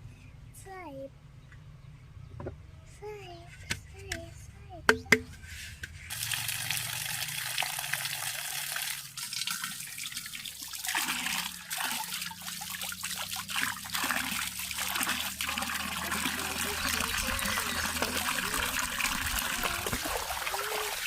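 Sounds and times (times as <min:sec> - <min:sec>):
water trickling and splashing: 0:06.1 - 0:21.0.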